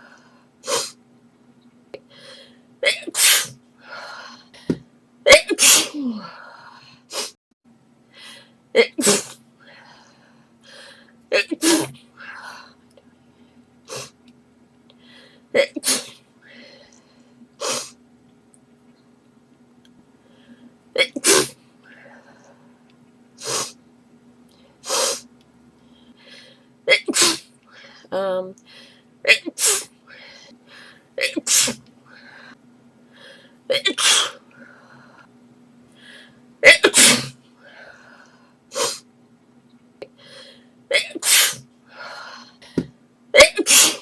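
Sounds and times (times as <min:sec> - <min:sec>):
girl sneezing: 0:05.3 - 0:06.3, 0:11.4 - 0:12.0, 0:21.0 - 0:21.6, 0:26.9 - 0:27.5, 0:29.3 - 0:29.9, 0:31.2 - 0:31.8, 0:33.7 - 0:34.4, 0:36.6 - 0:37.4, 0:40.9 - 0:41.6, 0:43.4 - 0:44.0
quick breaths: 0:28.7 - 0:29.1, 0:30.0 - 0:31.1, 0:40.2 - 0:40.8.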